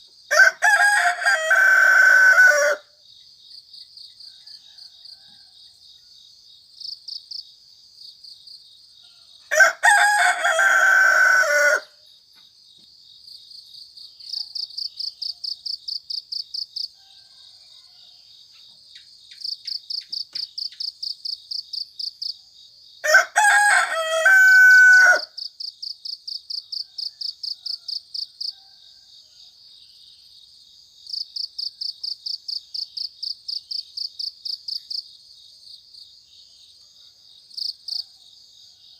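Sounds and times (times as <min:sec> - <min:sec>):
insects chirring in trills: 0:00.0 - 0:38.9
rooster crowing: 0:00.3 - 0:03.0, 0:04.2 - 0:05.8, 0:09.1 - 0:12.0, 0:16.9 - 0:18.4, 0:23.0 - 0:25.4, 0:26.7 - 0:29.6.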